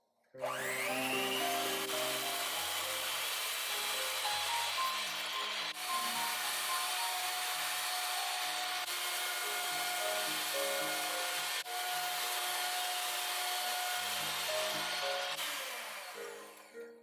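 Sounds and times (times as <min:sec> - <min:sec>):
background music: 0:00.4 - 0:11.6, 0:13.8 - 0:15.4
electric mixer whipping batter: 0:00.4 - 0:17.0.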